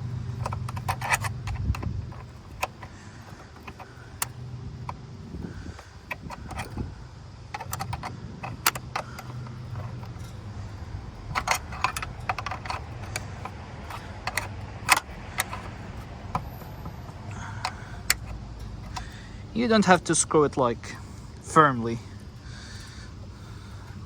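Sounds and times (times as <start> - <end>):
socket wrench clicking: 0.0 - 19.2
steady low hum: 0.0 - 24.0.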